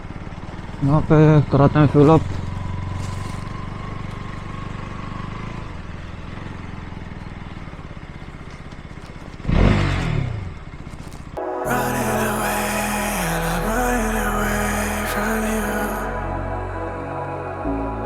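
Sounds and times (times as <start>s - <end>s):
motorcycle engine running: 0.0s - 11.0s
music: 11.4s - 18.0s.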